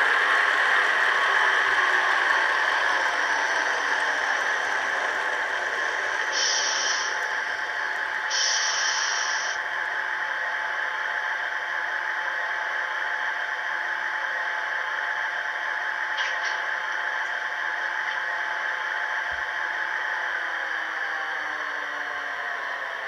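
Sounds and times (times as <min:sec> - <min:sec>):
blower-like hum: 0:00.0 - 0:23.0
compressed-air hiss: 0:06.3 - 0:07.2, 0:08.3 - 0:09.6.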